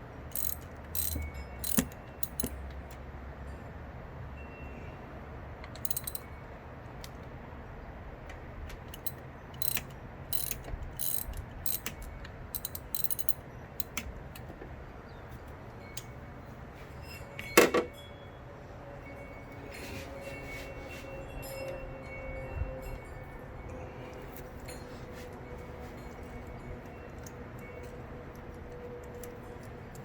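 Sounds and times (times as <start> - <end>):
ratchet wrench clicking: 0.3 - 2.6, 5.6 - 6.2, 8.9 - 14.1.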